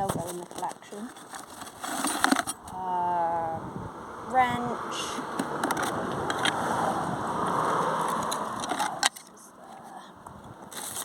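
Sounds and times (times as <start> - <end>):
metal objects clinking and rattling: 0.0 - 2.7, 8.0 - 9.8.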